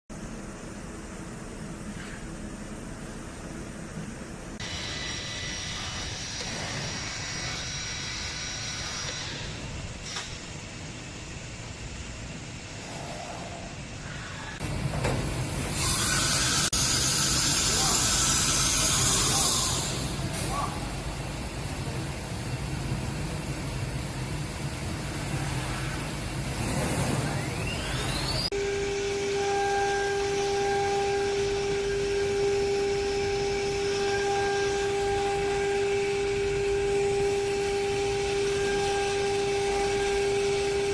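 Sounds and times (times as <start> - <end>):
cnc router running: 4.6 - 10.3, 15.7 - 26.4, 27.2 - 40.9
high spindle whine: 4.6 - 14.7, 15.6 - 40.9.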